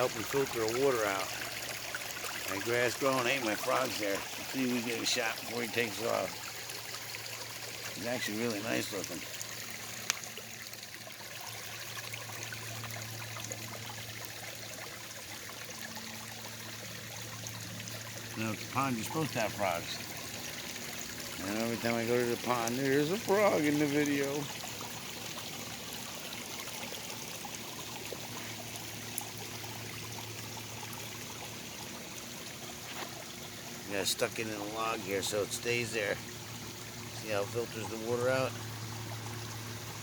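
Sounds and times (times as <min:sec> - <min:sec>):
waterfall splashing over rocks: 0:00.0 - 0:10.9
water splashing over rocks: 0:00.0 - 0:40.0.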